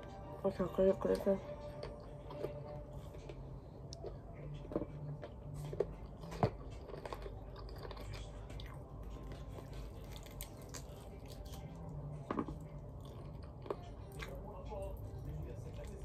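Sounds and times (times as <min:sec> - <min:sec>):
person chewing chicken skin: 0:01.8 - 0:14.4.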